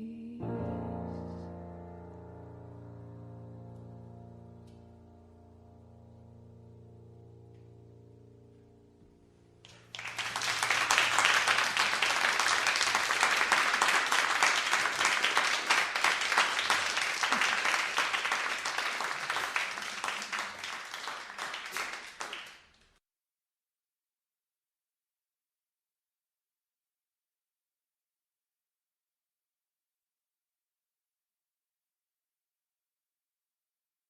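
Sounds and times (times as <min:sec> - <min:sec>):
audience applauding: 0:09.6 - 0:22.8.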